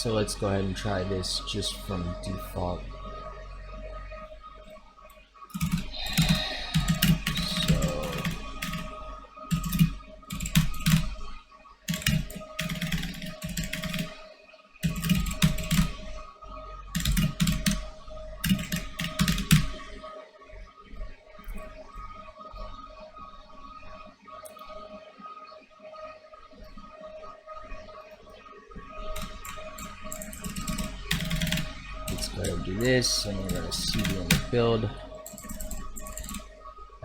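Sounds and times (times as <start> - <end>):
typing on a computer keyboard: 5.5 - 11.1, 11.9 - 14.2, 14.8 - 16.0, 16.9 - 17.8, 18.4 - 19.8, 29.2 - 32.7, 33.4 - 34.5, 35.2 - 36.5.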